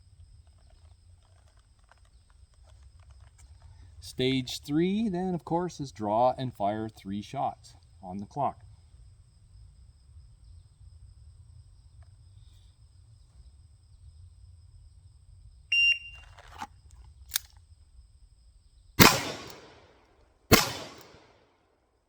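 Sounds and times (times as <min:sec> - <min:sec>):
shot timer beep: 0:15.7 - 0:16.2
revolver gunshots: 0:19.0 - 0:21.4.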